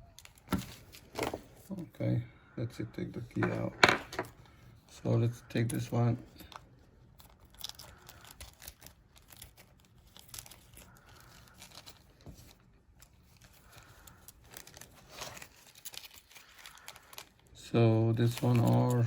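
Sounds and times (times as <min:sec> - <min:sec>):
packaging crinkling and rustling: 0:00.0 - 0:01.7, 0:06.3 - 0:19.0.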